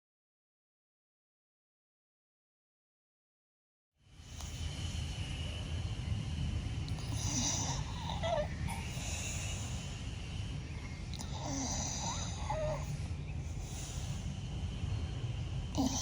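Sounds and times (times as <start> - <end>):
steady low rumble: 4.1 - 16.0
dog snoring: 6.9 - 9.9, 11.1 - 13.1, 15.7 - 16.0.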